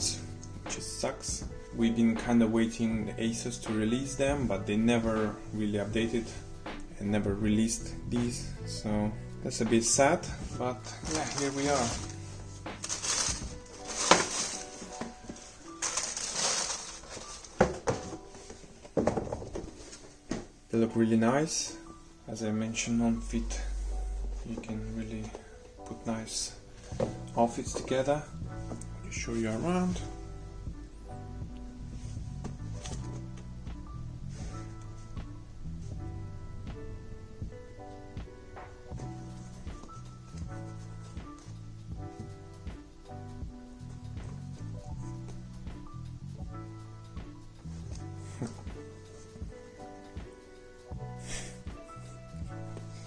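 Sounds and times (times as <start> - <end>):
soft background music: 0.0 - 53.0
cardboard rustling: 10.3 - 20.3.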